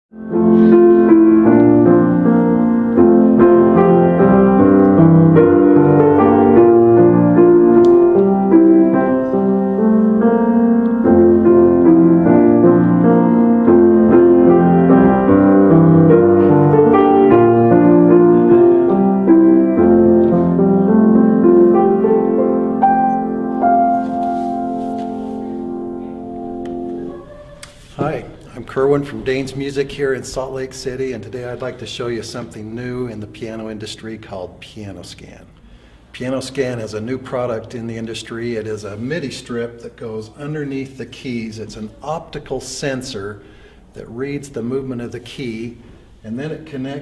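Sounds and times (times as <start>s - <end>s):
piano music: 0.1s - 28.4s.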